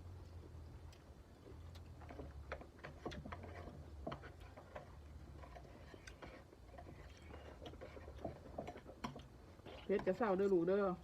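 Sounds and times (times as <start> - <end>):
low steady hum: 0.0 - 11.0
chewing and crunching food: 0.1 - 10.5.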